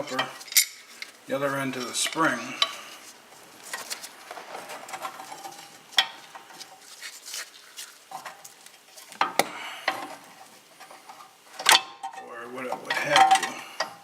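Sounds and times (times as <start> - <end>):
metal hook clinking and scraping: 0.0 - 3.0.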